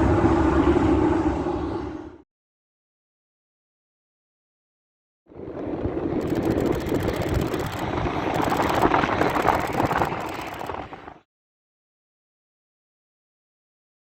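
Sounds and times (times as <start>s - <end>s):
jet engines roaring: 0.0s - 2.2s, 5.3s - 11.2s
wind rumble on microphone: 0.0s - 2.2s, 5.3s - 11.2s
camera shutter clicking rapidly: 6.2s - 10.8s.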